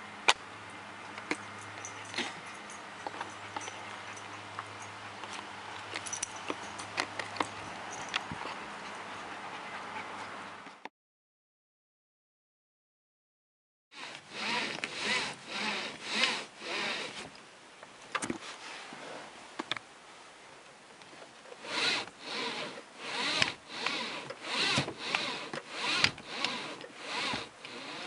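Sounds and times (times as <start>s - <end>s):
seatbelt webbing rubbing and squeaking: 14.4s - 17.3s.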